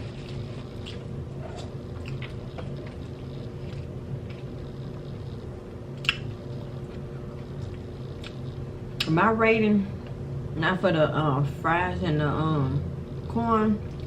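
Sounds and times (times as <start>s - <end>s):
wet mouth eating sounds: 0.0s - 9.1s
steady low hum: 0.0s - 14.0s.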